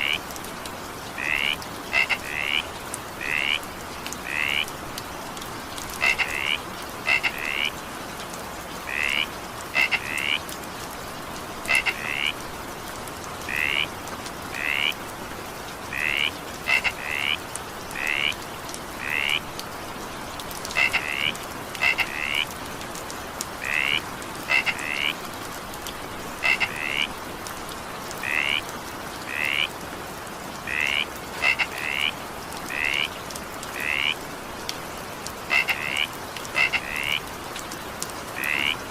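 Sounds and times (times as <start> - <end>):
frogs calling: 1.2 - 4.7, 6.0 - 7.8, 8.8 - 10.4, 11.7 - 12.4, 13.5 - 13.9, 14.5 - 15.0, 15.9 - 18.4, 19.0 - 19.5, 20.7 - 22.6, 23.6 - 25.2, 26.4 - 27.2, 28.2 - 28.7, 29.3 - 29.7, 30.6 - 34.2, 35.4 - 37.3, 38.4 - 38.8.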